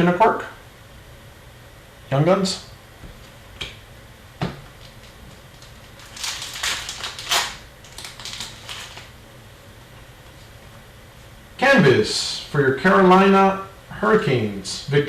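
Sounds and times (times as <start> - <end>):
wrapper crinkling and tearing: 4.7 - 9.2
pack wrapper click: 4.8 - 9.1.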